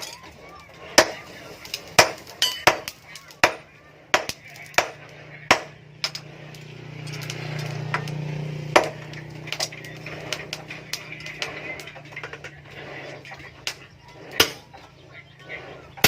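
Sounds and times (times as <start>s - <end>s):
hammer striking metal: 1.0s - 11.5s, 14.4s - 14.7s.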